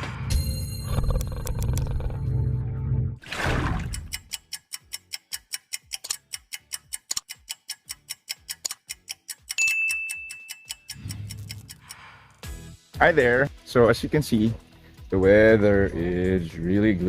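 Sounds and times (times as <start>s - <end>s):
rapid clock ticking: 3.8s - 12.0s
bright ding: 9.6s - 10.9s.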